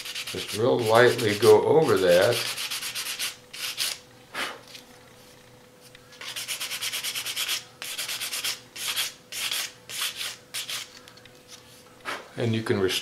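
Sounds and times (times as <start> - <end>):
sandpaper rubbing on plastic: 0.0 - 4.0.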